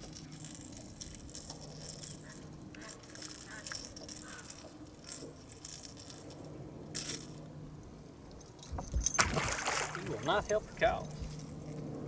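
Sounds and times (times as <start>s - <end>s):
small hard objects jingling: 0.0s - 7.4s.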